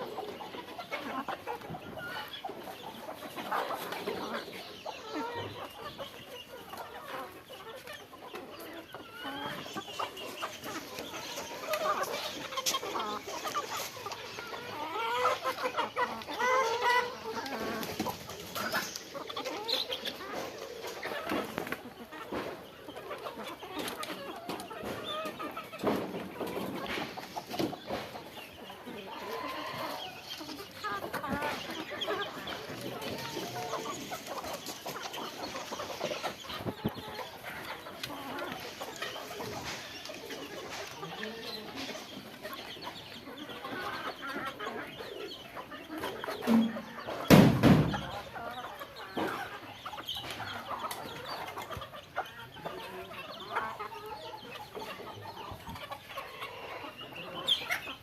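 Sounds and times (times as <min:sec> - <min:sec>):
chickens clucking: 0:00.0 - 0:58.0
loud thump: 0:47.3 - 0:48.0.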